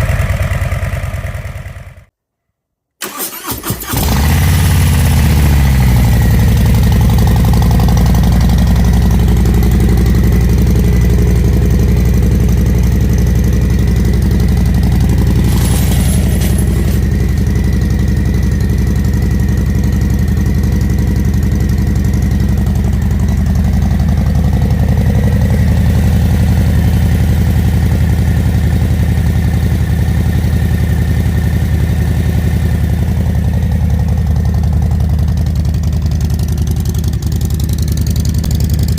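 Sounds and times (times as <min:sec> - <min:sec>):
motorcycle engine idling: 0:00.0 - 0:02.1, 0:04.5 - 0:38.9.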